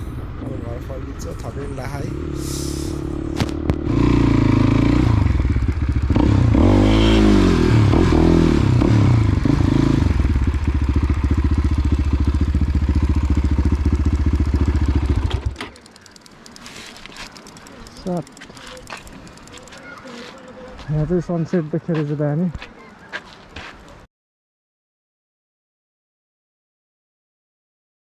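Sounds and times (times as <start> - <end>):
motorcycle engine revving: 0.0 - 20.5.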